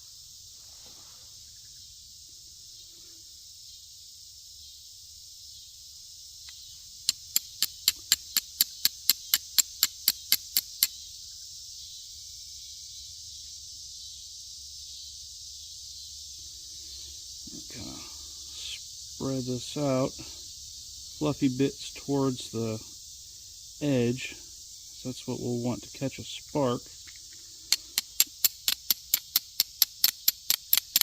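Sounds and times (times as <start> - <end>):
high-pitched insect chorus: 0.0 - 31.0
sharp clicks: 6.5 - 10.9, 27.1 - 31.0.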